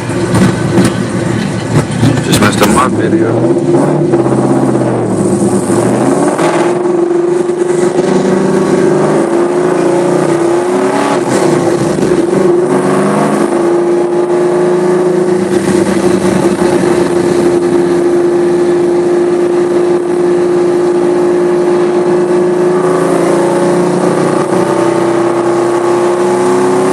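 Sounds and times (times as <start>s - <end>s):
car engine running: 0.0s - 26.9s.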